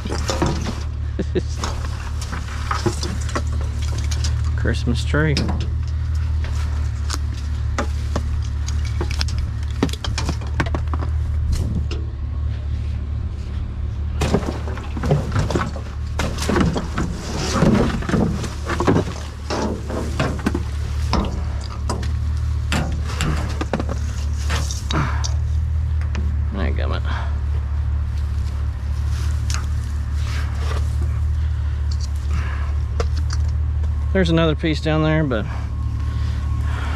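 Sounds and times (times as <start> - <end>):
scrap metal clanking and rattling: 0.0 - 12.2, 13.5 - 25.7
vehicle engine idling: 0.0 - 36.9.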